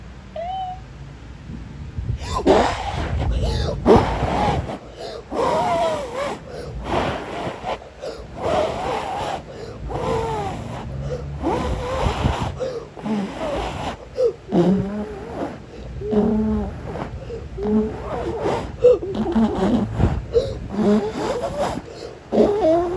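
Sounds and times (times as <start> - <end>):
person imitating howling wind: 0.3 - 1.0, 2.0 - 22.9
breath rumble on microphone: 1.5 - 22.9.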